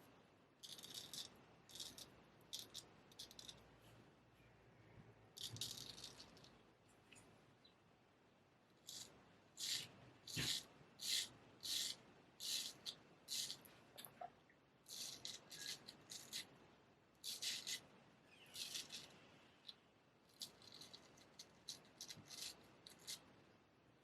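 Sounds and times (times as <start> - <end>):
razor scraping stubble: 8.8 - 13.6, 14.9 - 16.5, 18.5 - 19.1.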